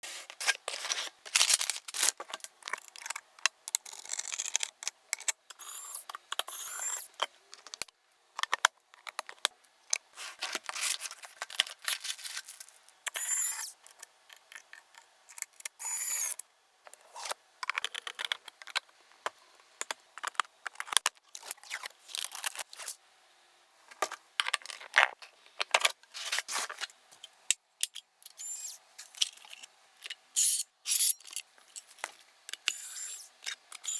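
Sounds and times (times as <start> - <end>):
packaging rustling: 0.2 - 3.1, 10.2 - 12.8.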